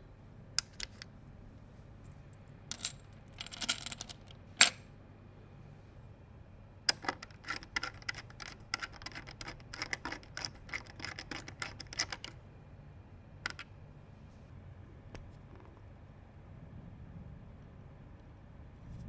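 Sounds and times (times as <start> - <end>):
computer hardware clicks and scrapes: 7.0 - 12.4.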